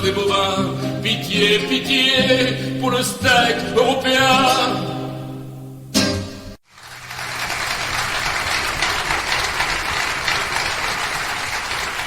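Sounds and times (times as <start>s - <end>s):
music: 0.0s - 6.6s
audience applauding: 6.6s - 12.0s.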